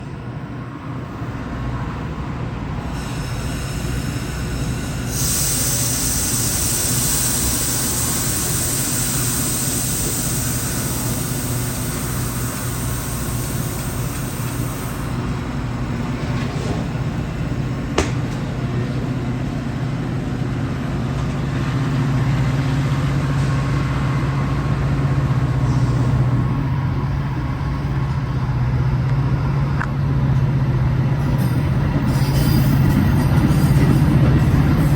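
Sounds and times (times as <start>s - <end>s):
train rumbling on rails: 0.0s - 34.9s.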